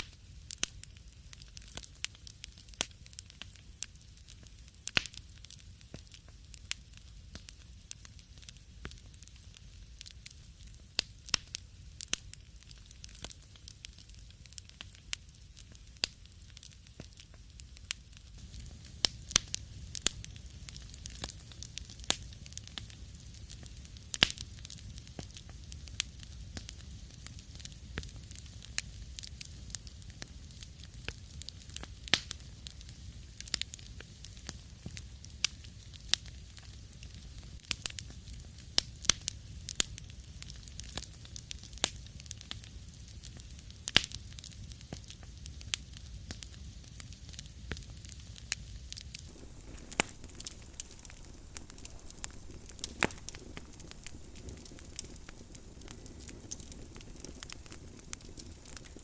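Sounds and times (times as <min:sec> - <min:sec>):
wood fire crackling: 0:00.0 - 0:59.0
low steady rumble: 0:49.3 - 0:59.0.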